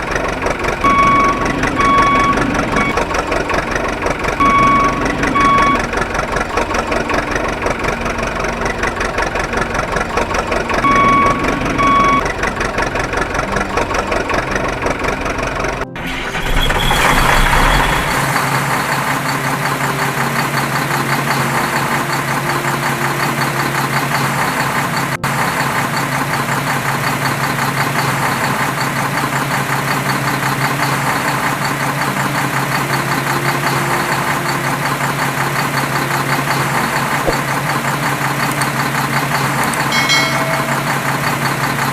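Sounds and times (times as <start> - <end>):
heavy diesel engines running: 0.0 - 41.9
back-up alarm beeping: 0.6 - 3.0, 4.2 - 6.0, 10.1 - 12.3.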